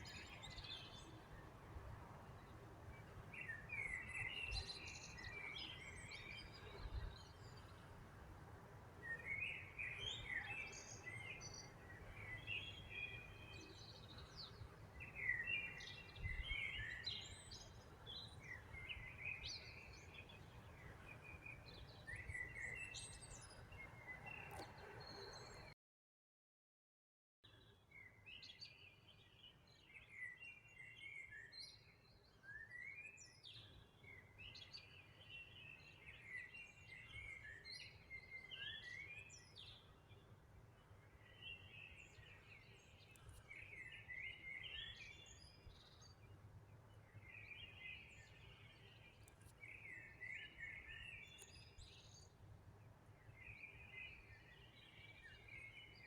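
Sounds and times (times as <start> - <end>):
songbird chirping and trilling: 27.5 - 52.4, 53.1 - 56.0.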